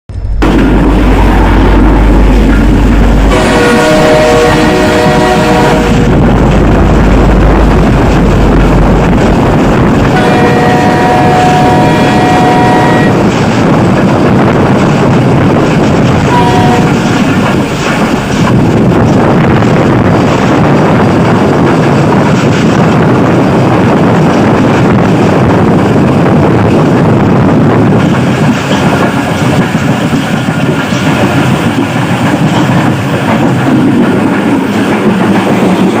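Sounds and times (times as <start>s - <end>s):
train wheels rattling over rails: 0.1s - 36.0s
train horn: 3.3s - 6.1s, 10.1s - 13.3s, 16.3s - 17.0s.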